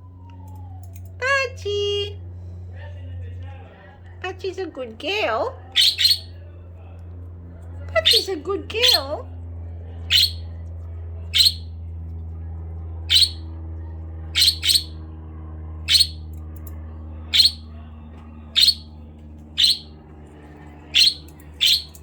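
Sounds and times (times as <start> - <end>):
steady low hum: 0.0 - 22.0
budgerigar chirping: 5.8 - 6.4, 8.0 - 9.1, 10.1 - 10.5, 11.4 - 11.7, 13.1 - 13.4, 14.4 - 15.0, 15.9 - 16.2, 17.3 - 17.7, 18.6 - 18.9, 19.6 - 19.9, 20.9 - 22.0.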